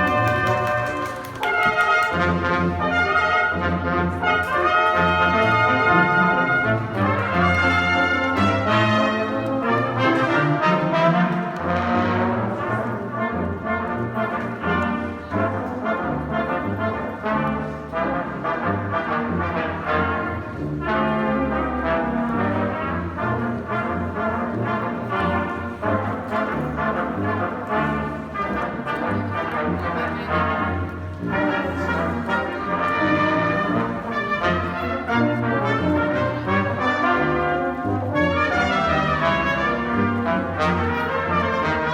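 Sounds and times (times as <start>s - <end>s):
concert band playing: 0.0s - 9.5s
brass instruments: 0.0s - 41.9s.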